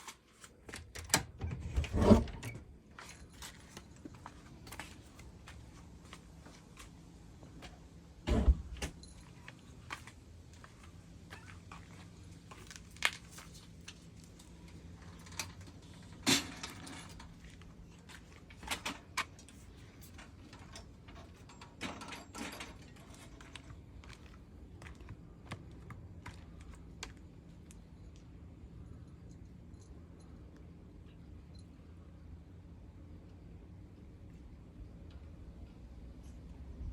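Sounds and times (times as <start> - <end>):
loud thump: 8.3 - 8.8.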